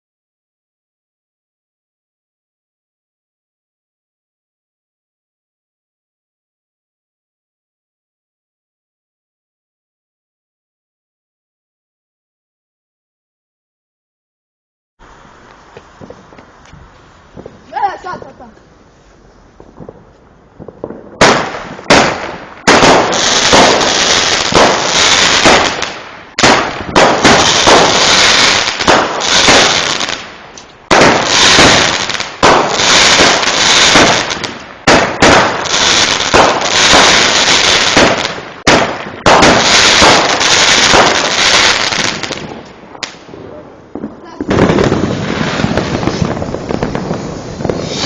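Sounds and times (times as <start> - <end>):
fireworks bangs and crackling: 15.0 - 48.0.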